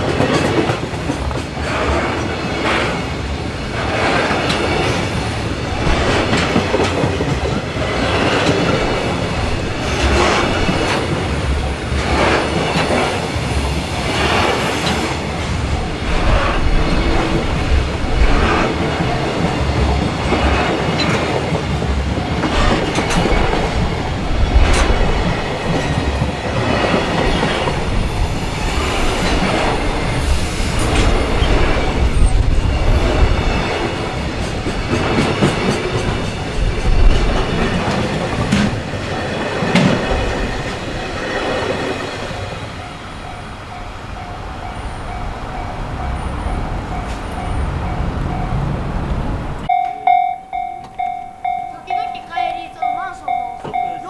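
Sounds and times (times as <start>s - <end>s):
train wheels clacking over rails: 0.0s - 54.0s
level crossing bell ringing: 49.7s - 54.0s.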